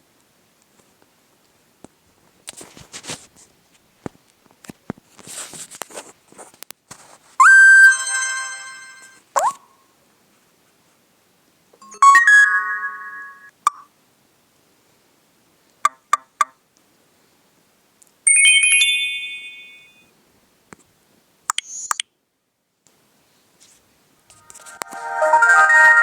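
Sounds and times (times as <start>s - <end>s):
phone message chime: 7.8s - 9.2s, 11.8s - 13.5s, 24.8s - 26.0s.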